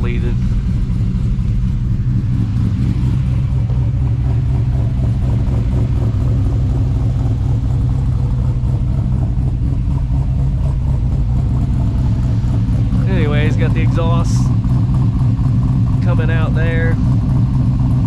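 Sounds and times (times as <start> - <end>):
vee eight engine idling: 0.0 - 18.0.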